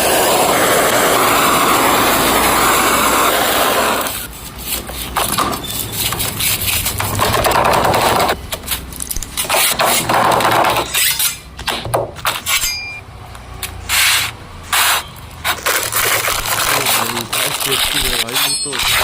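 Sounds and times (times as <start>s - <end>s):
short scraping bursts: 0.1s - 8.8s, 13.8s - 19.0s
sharp knocks and clinks: 12.4s - 13.0s, 18.2s - 18.9s.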